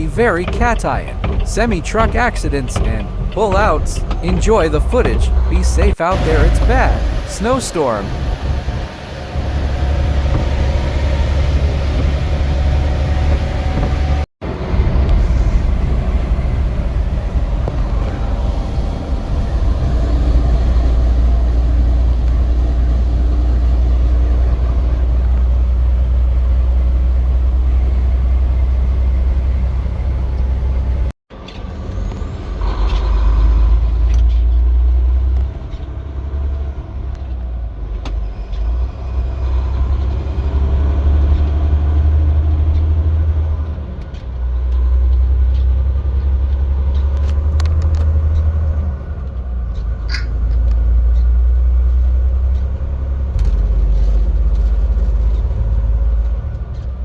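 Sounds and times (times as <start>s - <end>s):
deep rumble of road vehicles: 0.0s - 57.0s.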